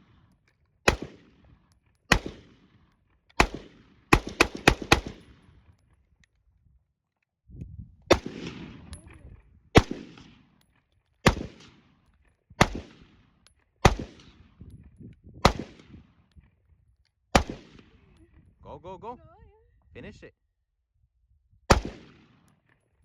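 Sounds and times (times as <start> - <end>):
rifle shots echoing: 0.0 - 5.6, 8.1 - 10.6, 11.2 - 12.0, 12.6 - 14.6, 15.4 - 16.2, 17.3 - 18.2, 21.7 - 22.7.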